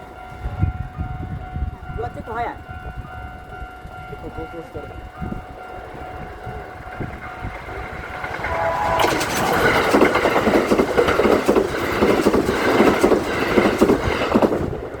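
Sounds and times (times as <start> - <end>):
train wheels rushing on rail: 0.0 - 15.0
wheels clicking over rail joints: 3.5 - 15.0.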